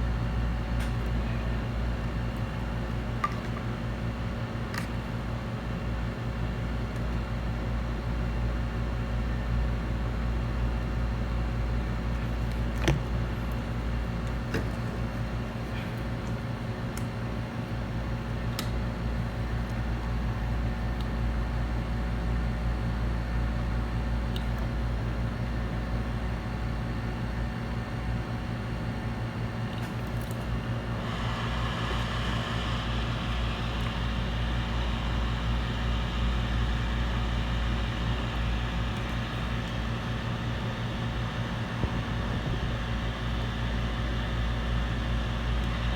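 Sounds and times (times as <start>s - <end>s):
machine humming: 30.7s - 41.2s.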